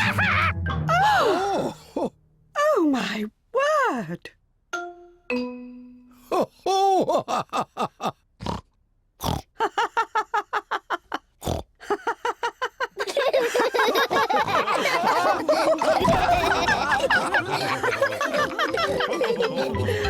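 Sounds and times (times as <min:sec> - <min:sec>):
cartoon characters laughing: 0:00.0 - 0:01.3, 0:11.8 - 0:20.0.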